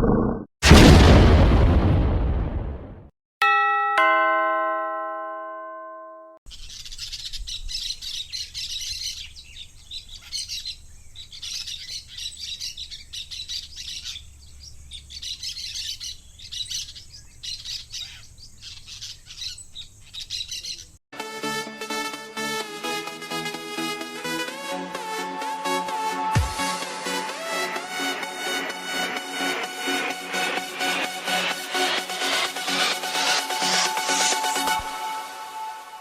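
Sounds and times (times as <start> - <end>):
two-tone doorbell chime: 3.4 - 6.4
parakeet chirping and chattering: 6.5 - 21.0.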